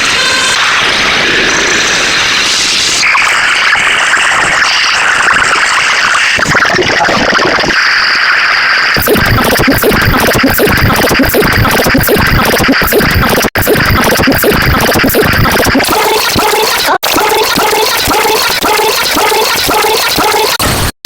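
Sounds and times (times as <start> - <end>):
rapid stuttering pulses: 9.0 - 21.0.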